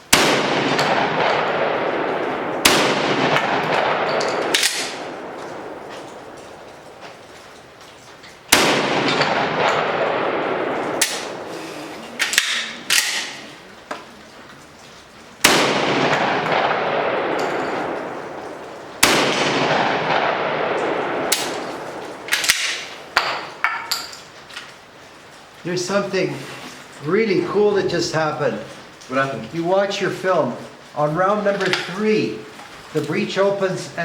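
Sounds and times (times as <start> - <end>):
shotgun shots with echo: 0.1 - 6.2, 8.5 - 11.6, 15.4 - 23.3.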